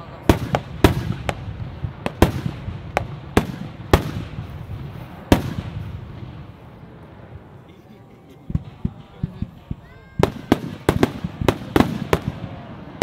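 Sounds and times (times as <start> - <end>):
fireworks bursting: 0.0 - 13.0.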